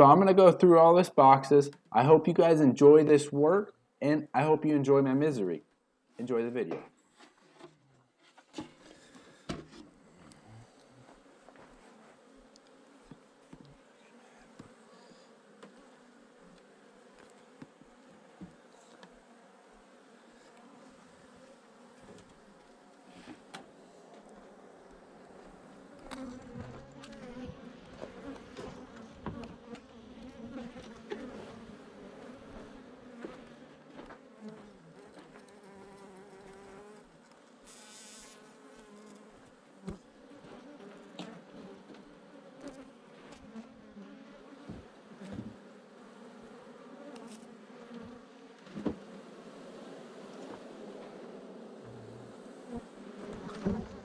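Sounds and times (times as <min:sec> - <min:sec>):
bees buzzing: 0:10.3 - 0:39.4, 0:40.2 - 0:54.0.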